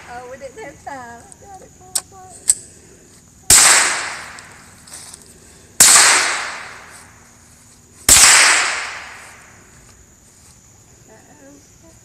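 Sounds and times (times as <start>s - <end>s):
gunshots: 3.5s - 4.6s, 5.8s - 6.9s, 8.1s - 9.4s.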